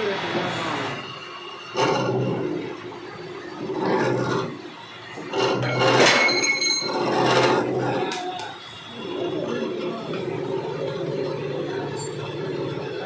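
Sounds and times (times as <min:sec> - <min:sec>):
steady machine hum: 0:00.0 - 0:13.0
milling machine cutting: 0:00.9 - 0:13.0.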